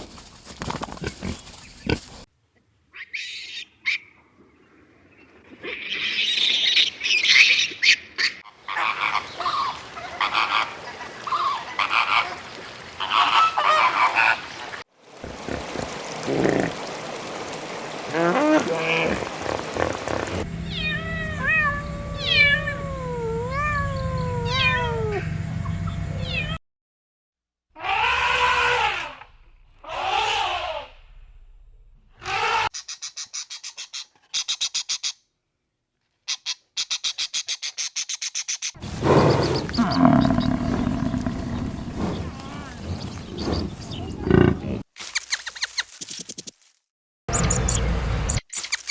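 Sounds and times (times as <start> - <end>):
long pitched animal calls: 18.1 - 25.3, 39.7 - 42.0
high-pitched animal cries: 18.2 - 25.3, 27.8 - 29.2, 29.8 - 30.9
low hum: 20.4 - 26.6
gliding pitched animal calls: 47.3 - 48.9.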